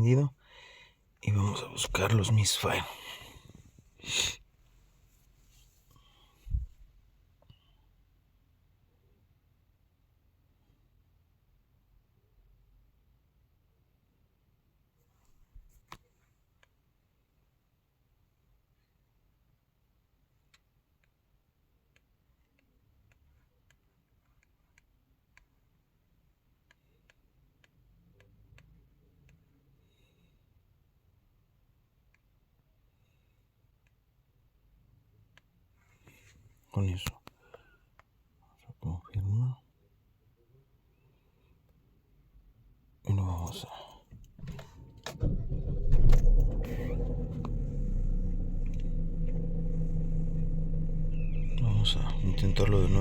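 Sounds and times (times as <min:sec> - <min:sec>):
car engine starting and idling: 0:44.2 - 0:53.0
low hum: 0:44.4 - 0:53.0.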